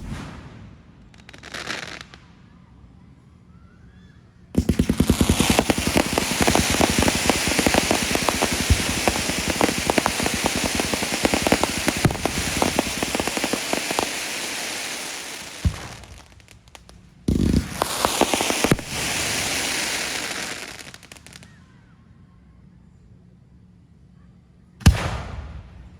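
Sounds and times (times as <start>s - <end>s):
fireworks popping and crackling: 0.0s - 2.3s, 4.6s - 21.6s
steady hiss: 4.6s - 21.5s.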